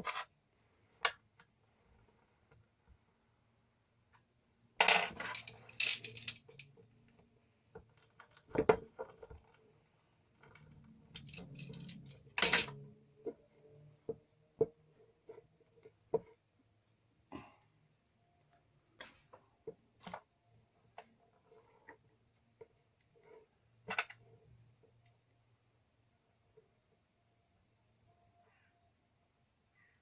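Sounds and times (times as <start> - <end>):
metal tools clinking: 4.9 - 6.7, 11.2 - 12.8.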